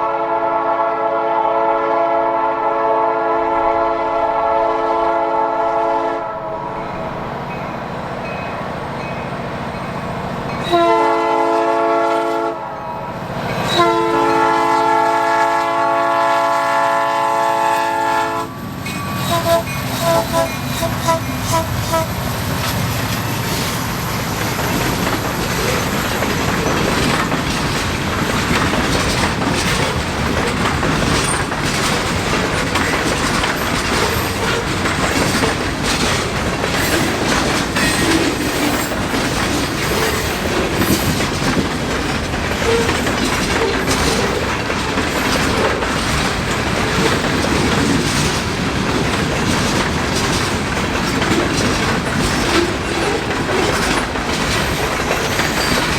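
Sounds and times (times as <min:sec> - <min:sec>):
train wheels rumbling on rail: 0:00.0 - 0:55.9
steel wheels clicking over rail joints: 0:18.8 - 0:55.9.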